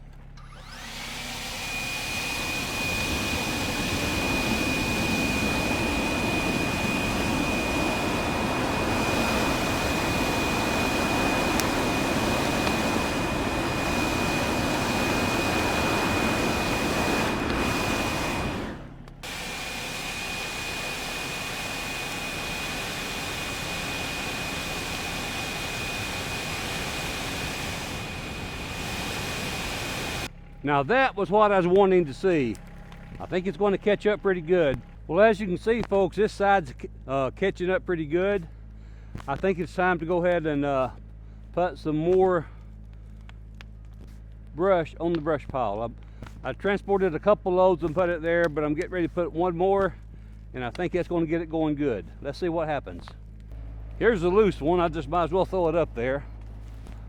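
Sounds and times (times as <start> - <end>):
leaf blower whining: 0.0 - 37.4, 38.0 - 57.0.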